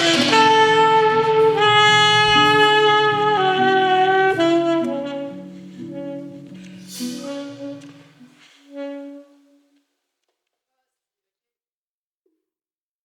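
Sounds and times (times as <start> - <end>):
cymbal-like wash: 0.0 - 3.7, 5.6 - 8.9
alto saxophone long notes: 0.0 - 9.8.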